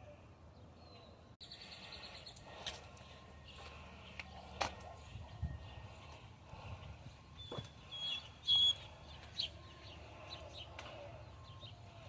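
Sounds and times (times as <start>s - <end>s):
birds calling: 0.6s - 12.0s
high whistled bird notes: 7.4s - 9.7s.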